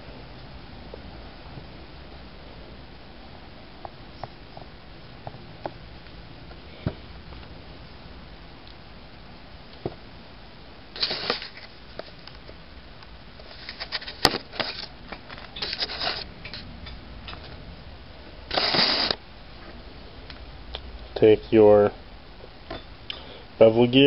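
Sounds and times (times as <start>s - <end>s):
scraping rustle: 11.0s - 12.2s, 13.4s - 16.7s
rustles of handled parts: 11.0s - 12.6s, 13.4s - 17.6s.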